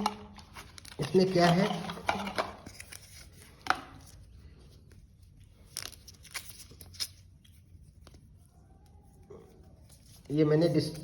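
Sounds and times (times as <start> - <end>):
plastic wrap rustling: 0.0 - 4.3.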